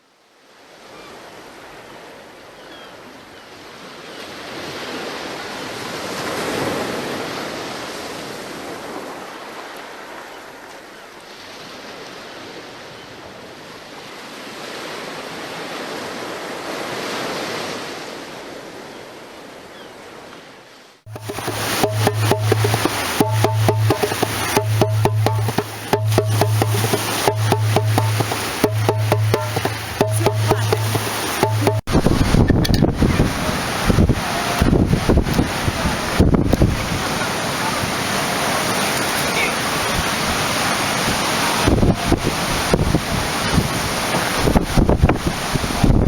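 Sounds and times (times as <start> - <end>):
sea waves washing onto shore: 21.1 - 46.0.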